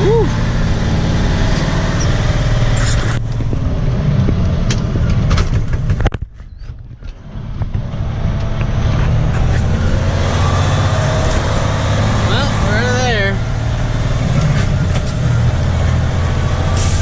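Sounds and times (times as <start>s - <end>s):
truck engine running: 0.0s - 17.0s.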